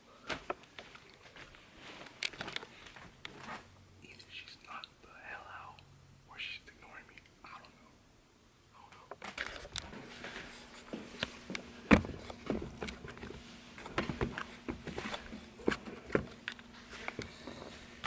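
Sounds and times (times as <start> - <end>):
faint steady hum: 0.0 - 18.0
objects being handled: 9.2 - 18.0.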